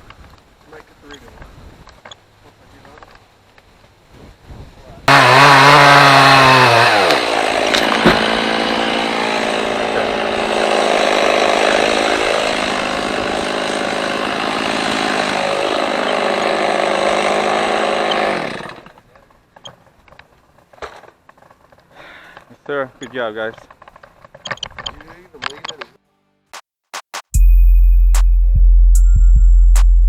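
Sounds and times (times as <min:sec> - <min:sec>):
chainsaw running: 0:05.1 - 0:19.0.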